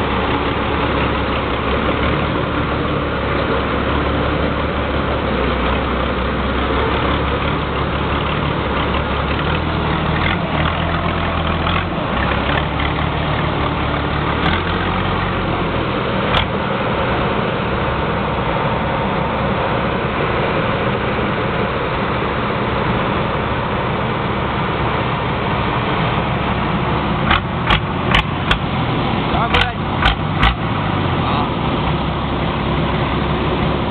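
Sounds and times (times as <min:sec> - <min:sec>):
engine idling deep rumble: 0:00.0 - 0:33.9.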